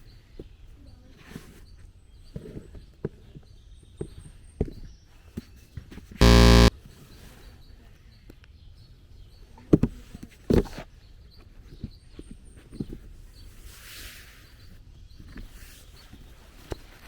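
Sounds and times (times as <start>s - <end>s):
buzzing beep: 6.2s - 6.7s
sharp thumps: 6.2s - 6.7s.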